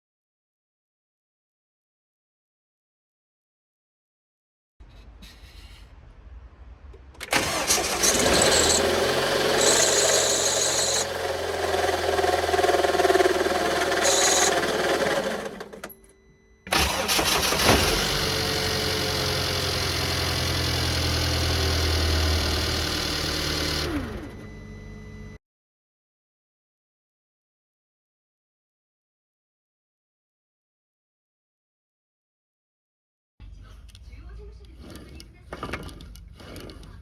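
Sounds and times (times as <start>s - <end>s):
car engine running with abnormal noise: 7.1s - 16.0s, 16.7s - 25.3s.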